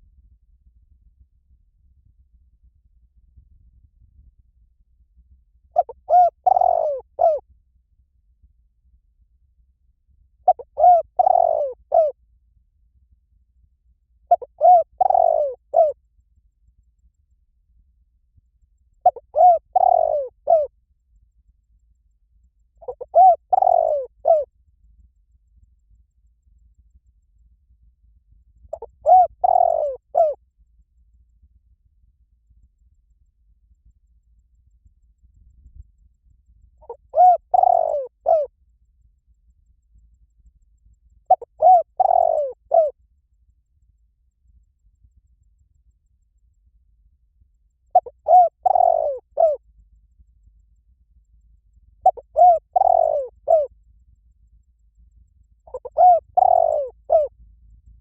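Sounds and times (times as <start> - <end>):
dove cooing: 5.8 - 7.4, 10.4 - 12.2, 14.3 - 16.0, 19.0 - 20.7, 22.8 - 24.5, 28.7 - 30.4, 36.8 - 38.5, 41.3 - 43.0, 47.9 - 49.6, 52.0 - 53.7, 55.7 - 57.3.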